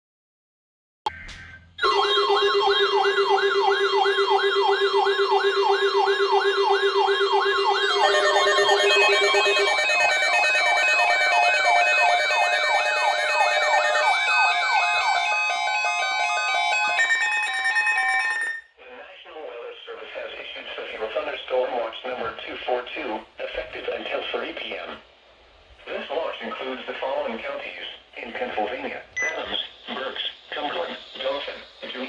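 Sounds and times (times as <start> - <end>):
steady and stepping siren tones: 1.1 - 18.6
electronic siren yelping: 1.1 - 18.7.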